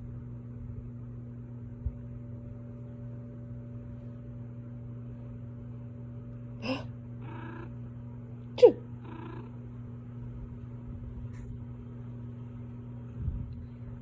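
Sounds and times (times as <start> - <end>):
person fake sneezing: 8.6 - 8.8.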